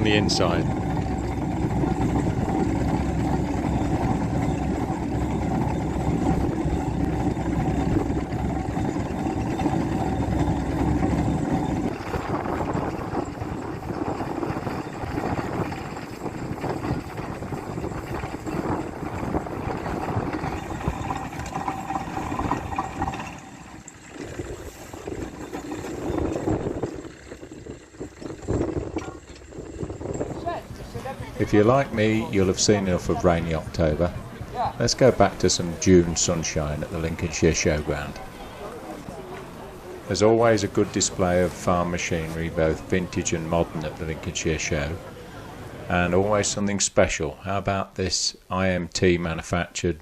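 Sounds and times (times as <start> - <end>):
deep low rumble: 0.0 - 32.6
steam engine running: 0.0 - 46.6.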